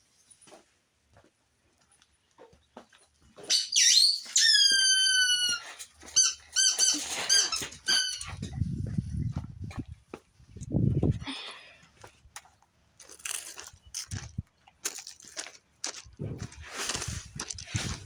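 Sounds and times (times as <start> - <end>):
squeaky dog toy squeaking: 3.5 - 8.4.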